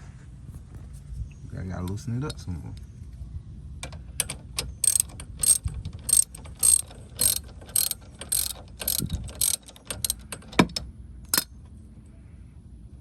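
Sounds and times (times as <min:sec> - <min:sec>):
ratchet wrench clicking: 0:03.8 - 0:11.5.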